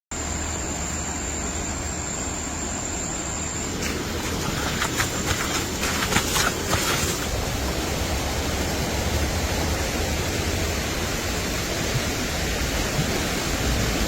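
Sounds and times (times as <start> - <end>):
thin high whine: 0.2 - 10.0
crackles and rustles: 3.8 - 7.4.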